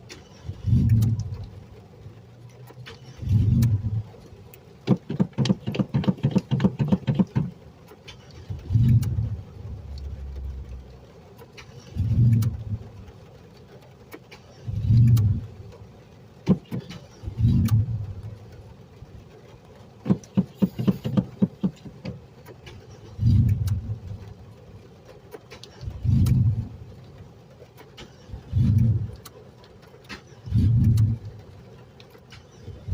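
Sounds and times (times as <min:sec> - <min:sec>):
car engine hard starting: 0:00.0 - 0:32.9
sharp clicks: 0:02.7 - 0:10.5, 0:25.3 - 0:32.9.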